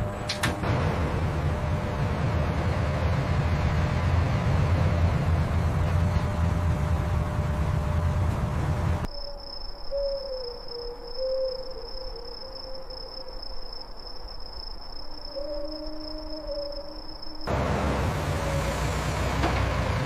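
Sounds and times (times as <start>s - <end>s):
low rumbling: 0.0s - 9.1s
faint wavering low tone: 9.0s - 17.5s
insect trill: 9.1s - 17.5s.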